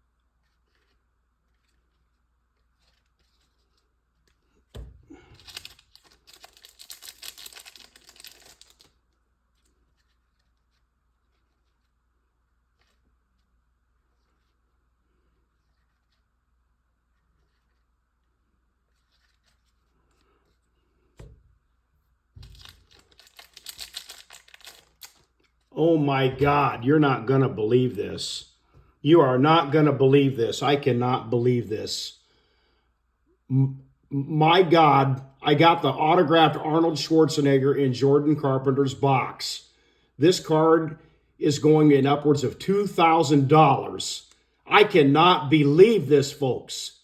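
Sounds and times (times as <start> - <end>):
crackling rustle: 0.4 - 16.5, 22.4 - 25.8
wrapper crinkling and tearing: 2.7 - 10.8, 22.4 - 25.7.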